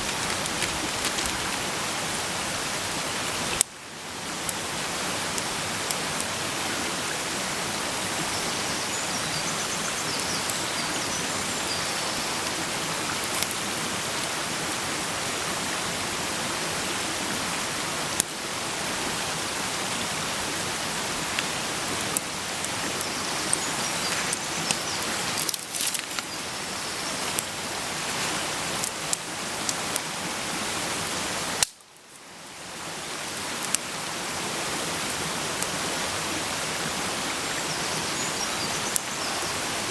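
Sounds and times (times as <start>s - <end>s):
fire popping and crackling: 0.0s - 1.9s, 24.2s - 26.3s, 31.6s - 31.8s.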